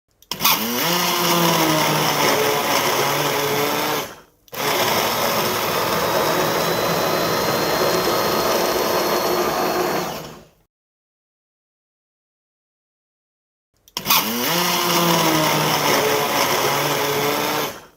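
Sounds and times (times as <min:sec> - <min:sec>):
electric blender running: 0:00.3 - 0:10.6, 0:14.0 - 0:17.9.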